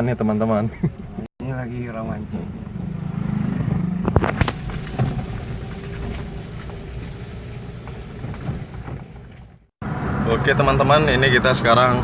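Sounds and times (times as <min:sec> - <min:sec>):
motorcycle engine under load: 0:02.9 - 0:09.7.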